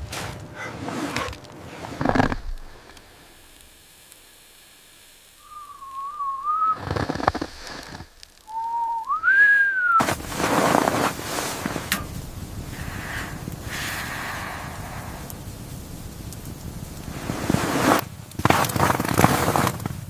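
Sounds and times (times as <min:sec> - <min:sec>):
crackling noise: 0:00.0 - 0:20.0
person whistling: 0:05.4 - 0:06.9, 0:08.4 - 0:10.1.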